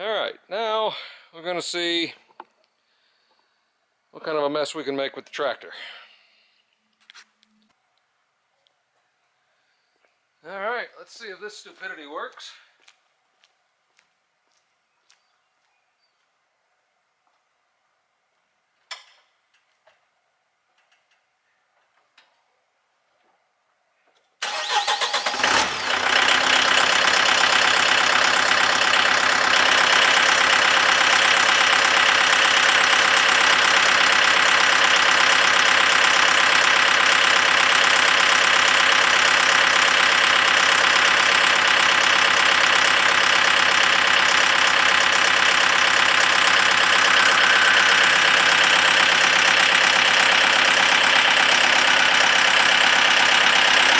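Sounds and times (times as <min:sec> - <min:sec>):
engine cranking and running: 0:24.4 - 0:53.9
constant whine: 0:25.3 - 0:53.9.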